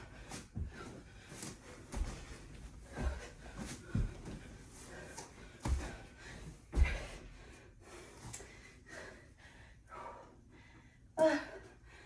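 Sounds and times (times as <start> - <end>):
woman panting: 0.0 - 12.0
woman gasping: 11.2 - 11.9.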